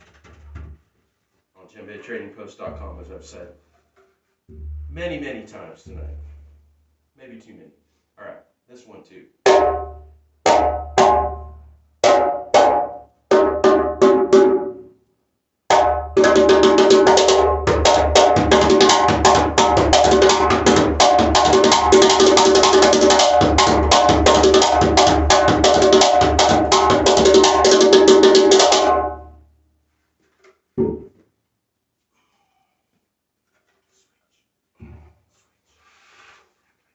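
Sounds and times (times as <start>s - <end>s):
djembe strokes: 2.6s - 6.7s, 15.7s - 29.3s.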